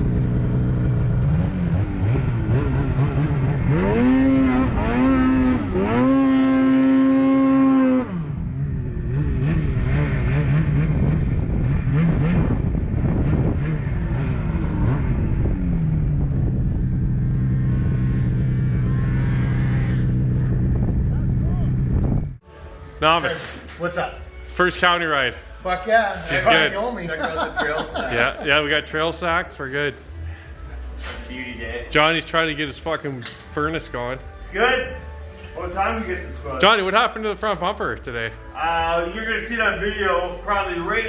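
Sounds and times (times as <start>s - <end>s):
snowmobile engine revving: 0.0s - 21.9s.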